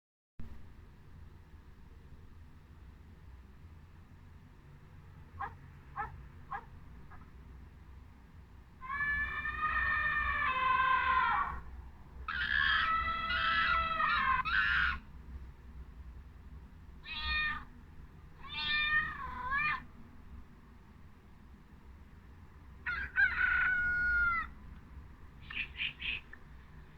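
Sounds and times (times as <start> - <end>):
cat meowing: 8.8 - 11.6, 12.3 - 15.0, 17.0 - 17.7, 18.4 - 19.8, 22.9 - 24.5.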